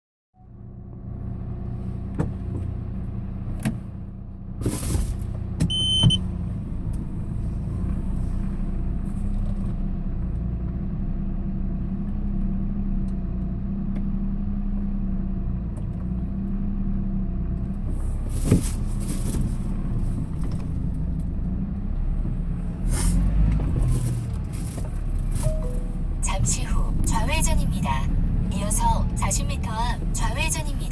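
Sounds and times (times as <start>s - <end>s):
vehicle engine and road noise: 0.4s - 30.9s
short electronic beep: 5.7s - 6.2s.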